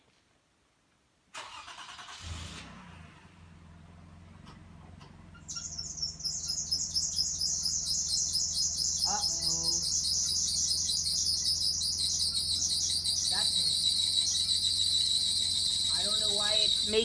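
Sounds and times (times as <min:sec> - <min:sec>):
car engine idling: 0:02.8 - 0:17.0
high-pitched belt screech: 0:09.8 - 0:17.0.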